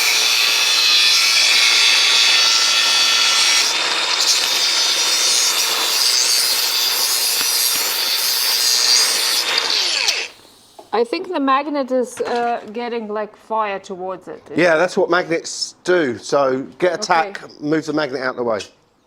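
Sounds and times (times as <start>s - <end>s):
welding arc hissing and buzzing: 0.0s - 11.0s.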